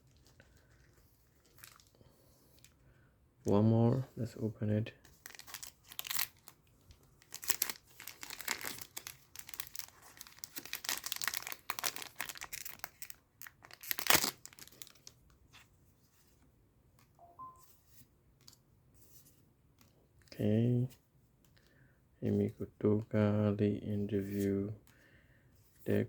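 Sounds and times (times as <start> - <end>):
wrapper tearing and crinkling: 1.4 - 1.9, 5.2 - 6.6, 7.2 - 15.2.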